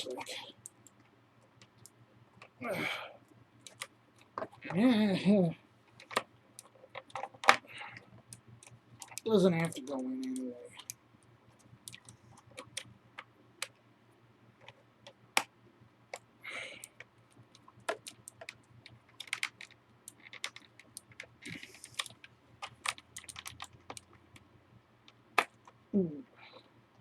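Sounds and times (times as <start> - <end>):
plastic keyboard clicks: 3.6 - 4.6, 8.3 - 11.0, 11.6 - 13.8, 16.1 - 24.2, 25.0 - 25.8.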